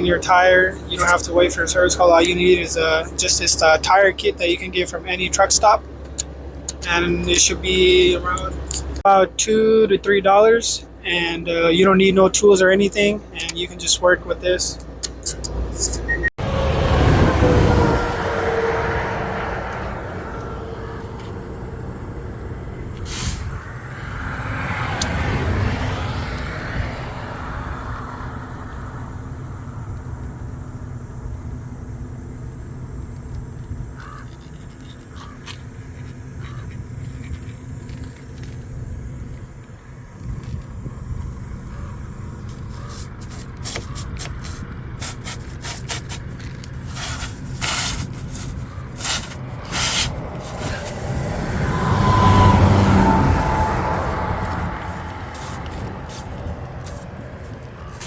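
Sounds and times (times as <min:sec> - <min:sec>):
passing traffic: 0:00.0 - 0:58.0
tool scraping in tyre puncture: 0:15.9 - 0:58.0
engine idling: 0:16.4 - 0:58.0.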